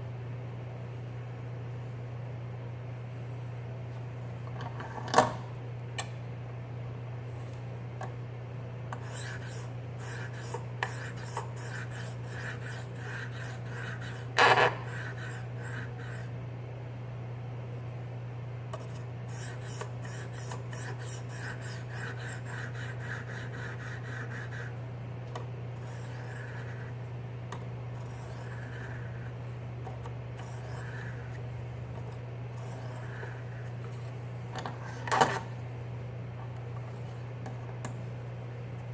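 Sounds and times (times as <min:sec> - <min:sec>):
sharpening stone rasping on knife: 0:09.0 - 0:14.3.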